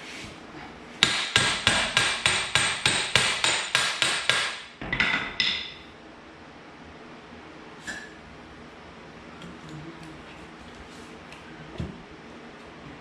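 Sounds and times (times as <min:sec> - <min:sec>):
hammer striking steel: 0:01.0 - 0:04.7.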